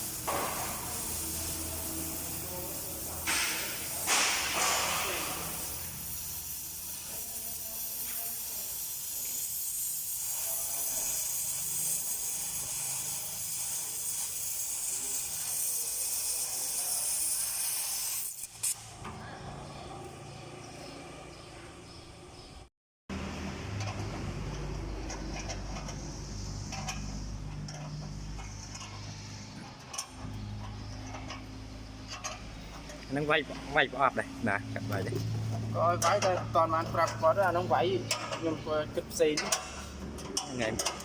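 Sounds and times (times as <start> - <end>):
steady hiss: 0.0 - 18.8.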